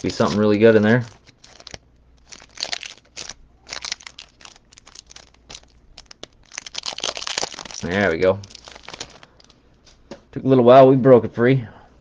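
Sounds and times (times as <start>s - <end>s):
plastic wrapper crinkling and tearing: 0.0s - 9.6s.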